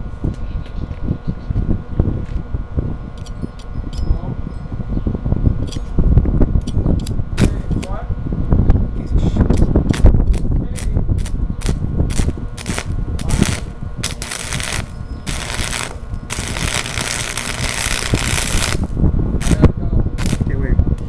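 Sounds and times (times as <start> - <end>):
welding arc crackling and hissing: 9.9 - 20.8.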